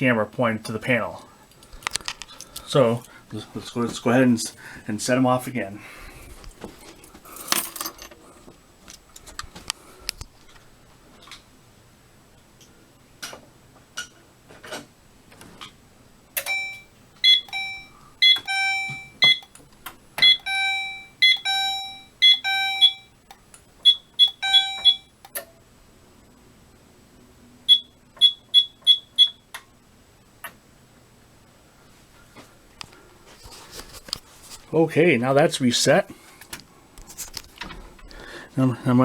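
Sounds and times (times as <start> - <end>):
fire alarm horns blasting: 16.4 - 19.5, 20.2 - 25.4, 27.7 - 29.4.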